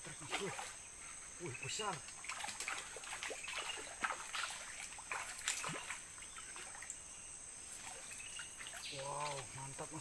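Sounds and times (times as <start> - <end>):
water splashing and dripping: 0.1 - 0.8, 1.7 - 7.0, 7.7 - 9.7.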